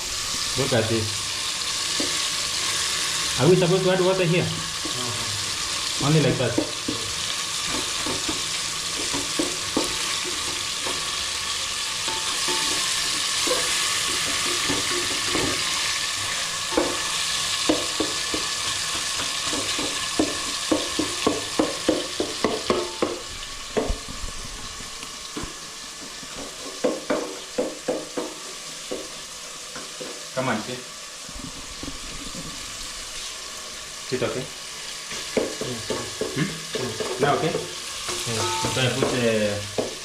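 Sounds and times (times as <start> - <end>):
food sizzling in a pot: 0.0 - 40.0
spoon clacking against a pot: 12.0 - 15.6, 35.2 - 39.2.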